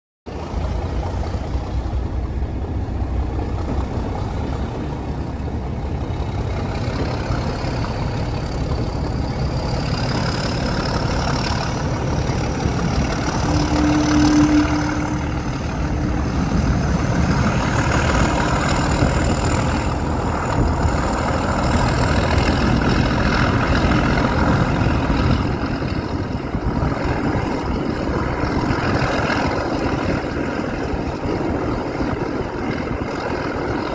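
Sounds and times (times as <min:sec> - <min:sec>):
diesel locomotive engine running: 0:00.3 - 0:33.9
short steady tone: 0:13.4 - 0:15.5.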